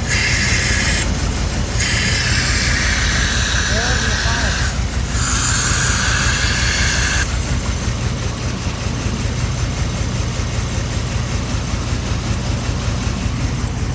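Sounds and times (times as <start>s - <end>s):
engine idling with lifter tick: 0.0s - 4.0s, 4.8s - 13.9s
loud hiss: 0.0s - 7.5s.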